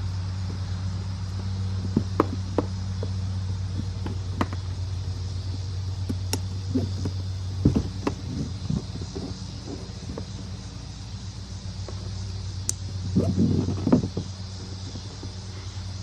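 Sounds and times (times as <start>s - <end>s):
steady low hum: 0.0s - 16.0s
heavier knocks: 6.7s - 9.8s.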